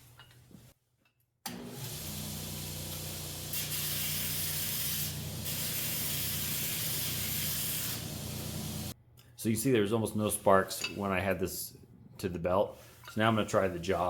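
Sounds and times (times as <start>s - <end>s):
belt grinder motor hum: 1.5s - 8.9s
metal grinding hiss: 2.0s - 9.0s.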